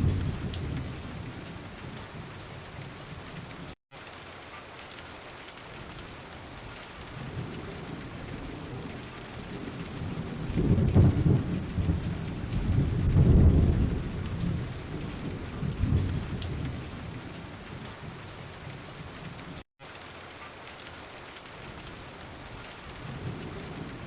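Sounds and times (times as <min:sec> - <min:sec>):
thunder rumbling: 0:00.0 - 0:03.7, 0:06.6 - 0:19.6, 0:21.6 - 0:24.0
heavy rain on car roof: 0:00.0 - 0:24.0.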